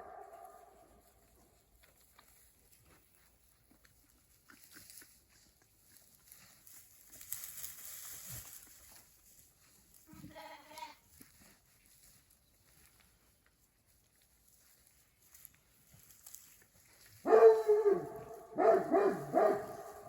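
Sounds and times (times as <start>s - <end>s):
sheep bleating: 10.1s - 11.0s.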